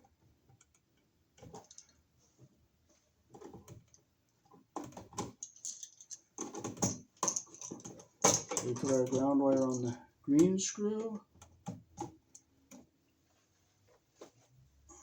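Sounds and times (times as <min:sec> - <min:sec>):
clicks and scrapes of handled wiring: 0:00.5 - 0:02.0, 0:03.3 - 0:12.9.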